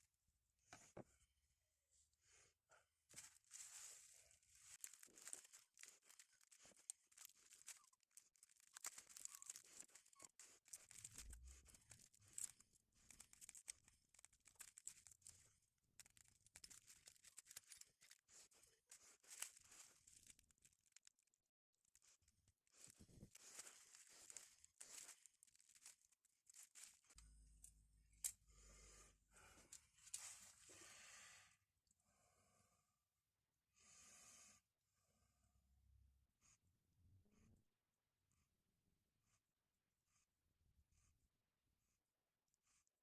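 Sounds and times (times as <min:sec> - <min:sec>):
rustling crinkling and tearing: 0:03.1 - 0:28.4, 0:29.4 - 0:31.2.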